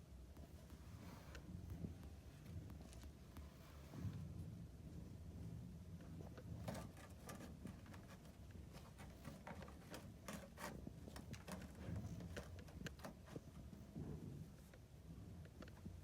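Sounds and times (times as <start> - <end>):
light clicks and taps: 6.0 - 13.9.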